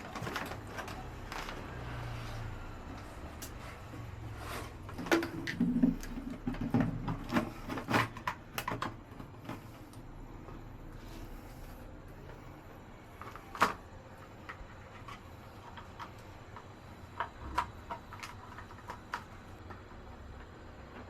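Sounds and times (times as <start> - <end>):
parts and tools clicking and knocking: 4.5 - 10.6.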